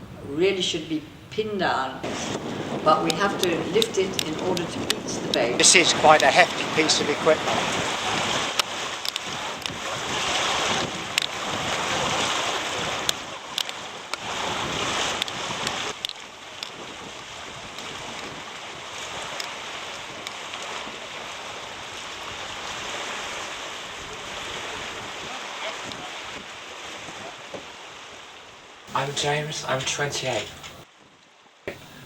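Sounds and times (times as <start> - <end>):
water washing at shoreline: 0.0 - 32.0
wind: 0.0 - 32.0
sharp clicks: 3.0 - 5.5.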